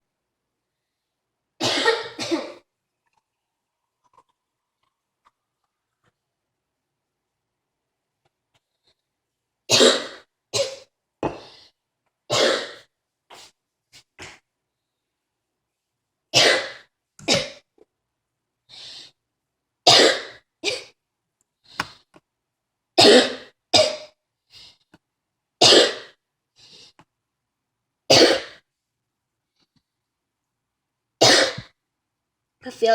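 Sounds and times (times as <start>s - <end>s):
person coughing: 1.6s - 2.6s, 9.7s - 11.4s, 12.3s - 12.9s, 19.9s - 21.0s, 23.0s - 24.1s, 28.1s - 28.6s, 31.2s - 31.7s.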